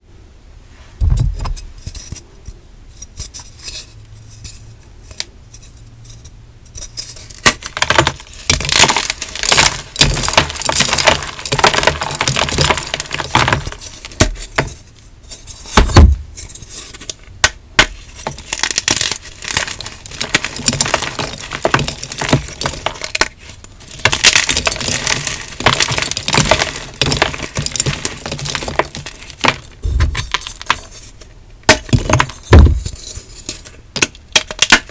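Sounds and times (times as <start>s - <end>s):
chalk blocks crunching: 7.0s - 17.1s, 17.8s - 34.9s.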